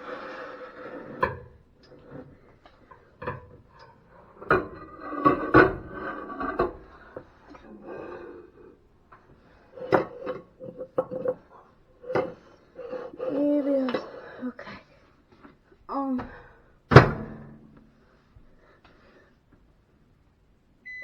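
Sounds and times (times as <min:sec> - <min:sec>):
dishes clinking and knocking: 0:02.9 - 0:07.3.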